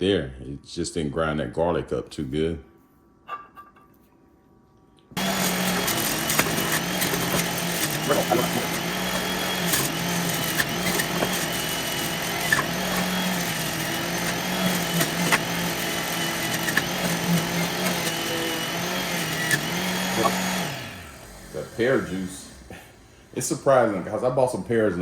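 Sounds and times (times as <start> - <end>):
juicer motor hum: 5.2 - 22.7.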